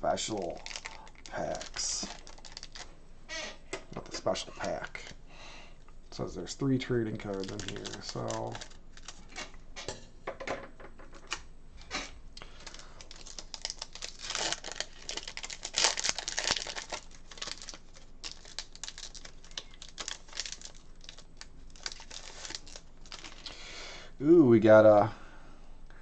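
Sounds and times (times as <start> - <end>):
foil wrapper crinkling and tearing: 0.1 - 2.9, 7.0 - 9.6, 11.3 - 23.6.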